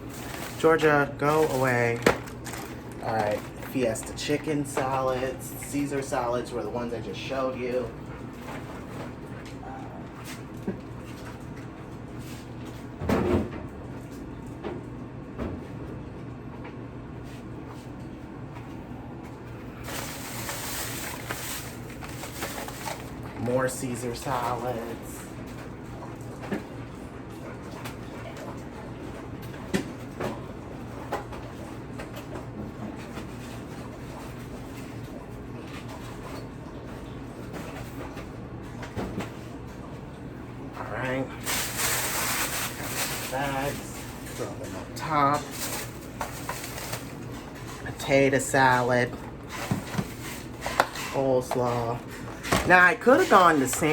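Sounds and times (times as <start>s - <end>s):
groceries clunking: 0.0s - 11.2s, 19.3s - 25.6s, 40.9s - 53.9s.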